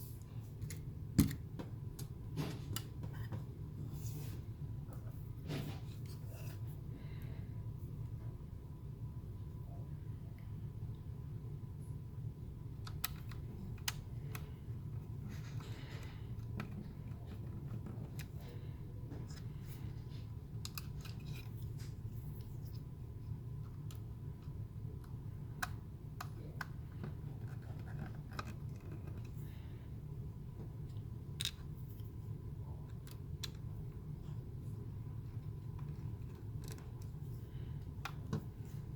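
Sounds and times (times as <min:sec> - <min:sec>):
steady low hum: 0:00.0 - 0:38.9
plastic parts clicking and tapping: 0:00.6 - 0:03.4, 0:20.6 - 0:21.5, 0:35.8 - 0:37.2.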